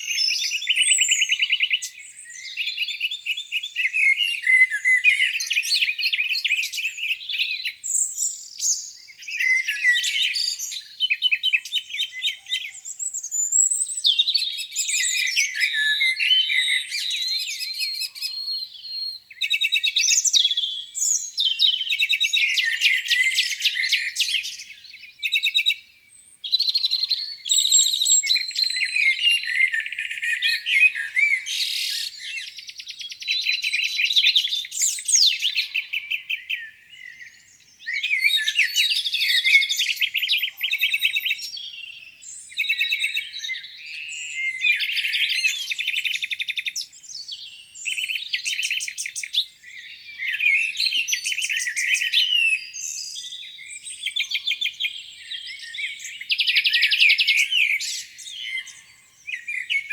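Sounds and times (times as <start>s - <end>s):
songbirds singing: 0.0s - 59.9s.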